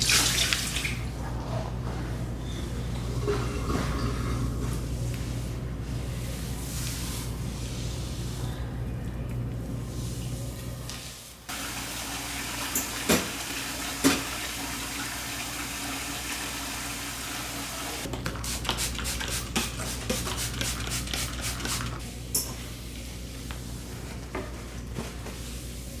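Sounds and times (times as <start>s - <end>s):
water running into a sink: 0.0s - 1.1s, 11.5s - 19.2s.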